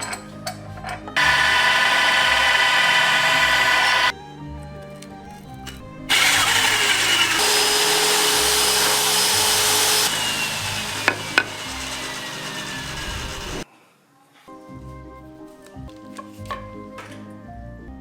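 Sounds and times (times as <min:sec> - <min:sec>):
power tool grinding whir: 0:01.2 - 0:04.2, 0:06.1 - 0:13.6.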